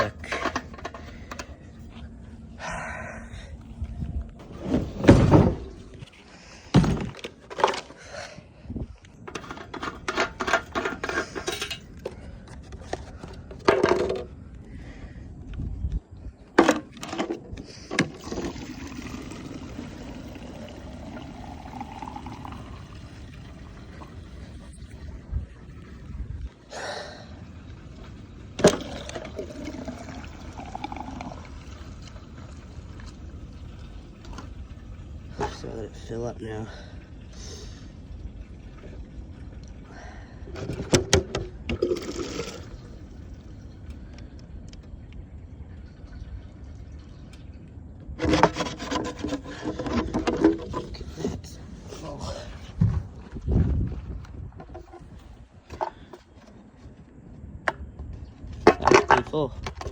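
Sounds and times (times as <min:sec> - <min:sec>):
gas can and fuel cap clunking: 0:00.0 - 0:01.6, 0:06.7 - 0:08.0, 0:09.3 - 0:14.4, 0:16.6 - 0:19.1, 0:28.6 - 0:30.0, 0:40.5 - 0:42.7, 0:48.2 - 0:51.4, 0:58.6 - 0:59.9
gasoline pouring into fuel tank: 0:16.9 - 0:36.1, 0:36.7 - 0:44.1, 0:48.2 - 0:51.3.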